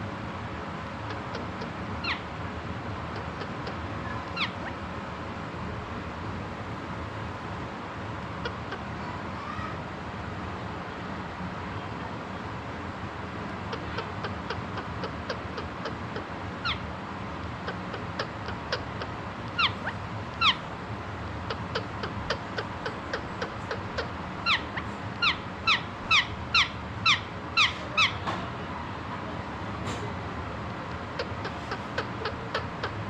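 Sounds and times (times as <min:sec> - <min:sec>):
parakeet chirping: 0:01.1 - 0:02.3, 0:03.0 - 0:04.8, 0:13.7 - 0:16.9, 0:17.6 - 0:20.7, 0:21.4 - 0:28.2, 0:31.0 - 0:33.0.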